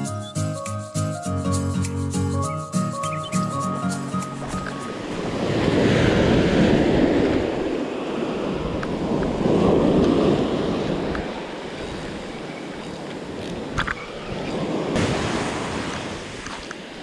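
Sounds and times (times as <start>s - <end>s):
surf washing onto beach: 4.3s - 17.0s
wind on microphone: 4.4s - 17.0s.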